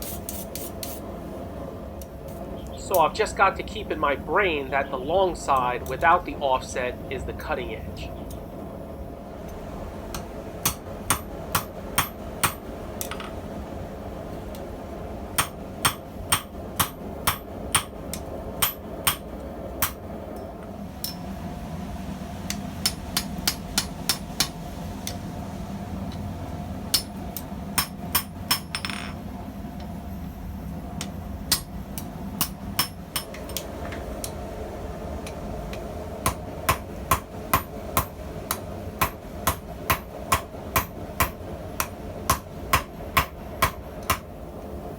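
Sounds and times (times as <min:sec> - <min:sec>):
hammer striking steel on anvil: 0:10.1 - 0:13.3, 0:15.4 - 0:21.3, 0:22.5 - 0:25.2, 0:26.9 - 0:29.2, 0:31.0 - 0:33.6, 0:36.2 - 0:44.3.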